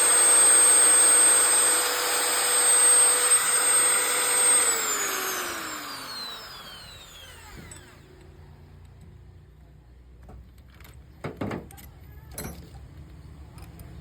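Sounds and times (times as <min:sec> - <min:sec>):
electric drill whining: 0:00.0 - 0:08.3.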